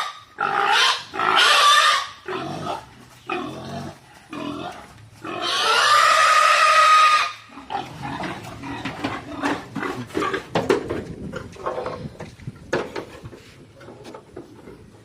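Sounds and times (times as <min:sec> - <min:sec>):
pig squealing: 0:00.0 - 0:03.9, 0:04.5 - 0:09.4
pigs grunting: 0:00.0 - 0:10.6.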